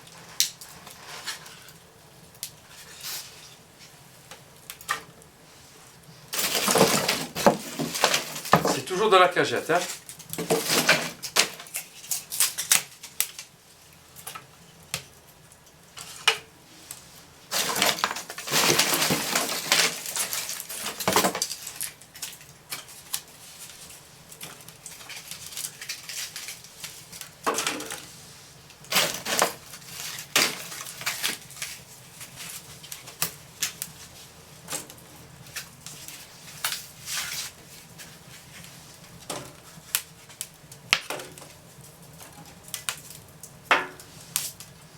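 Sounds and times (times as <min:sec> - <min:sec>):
wood fire crackling and popping: 0:00.0 - 0:44.9
wood clattering: 0:06.4 - 0:09.0.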